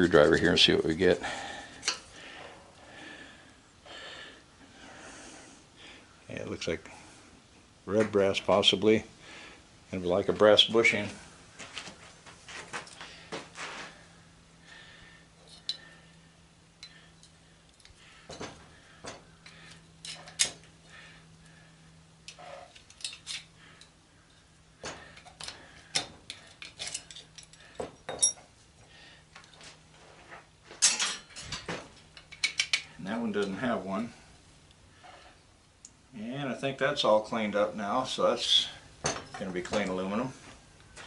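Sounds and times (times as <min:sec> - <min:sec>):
faint steady hum: 0:00.0 - 0:41.0
metal parts and tools clinking: 0:16.8 - 0:20.7, 0:22.2 - 0:23.9, 0:24.8 - 0:28.5, 0:30.8 - 0:33.6.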